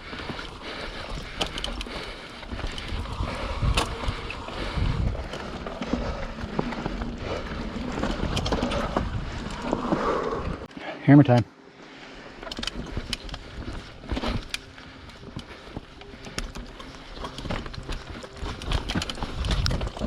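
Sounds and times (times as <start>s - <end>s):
bike rattling and clicking: 0.0s - 10.7s, 11.8s - 20.0s
wind rumbling on microphone: 0.0s - 10.7s, 16.5s - 20.0s
bike tyre and trail noise: 0.0s - 20.0s.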